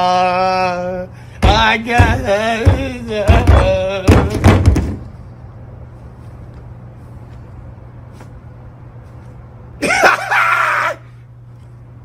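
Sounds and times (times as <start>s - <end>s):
man singing: 0.0s - 5.0s
low pulsing beat: 1.4s - 4.2s.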